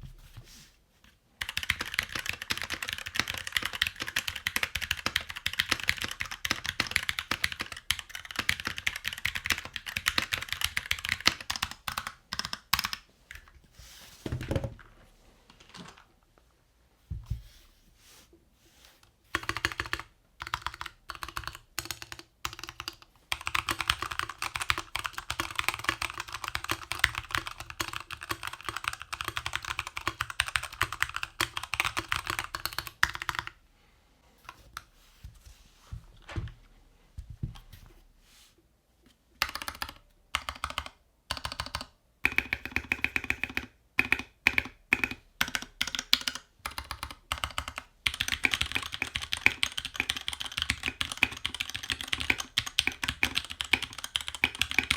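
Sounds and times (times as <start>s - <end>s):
typing on mechanical keyboard: 1.4s - 13.5s, 19.3s - 33.6s, 39.4s - 54.9s.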